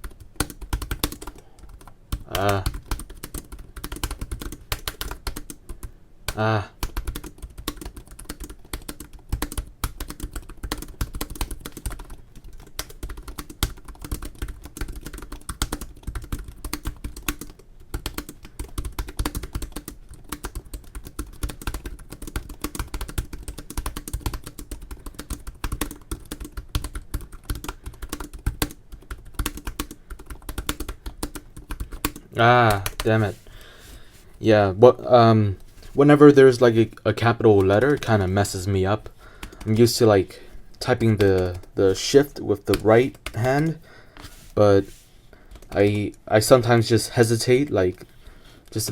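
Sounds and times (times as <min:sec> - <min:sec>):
fast typing on laptop keyboard: 0:00.0 - 0:33.2, 0:37.5 - 0:38.2, 0:39.3 - 0:39.9, 0:40.8 - 0:43.8, 0:45.4 - 0:46.2.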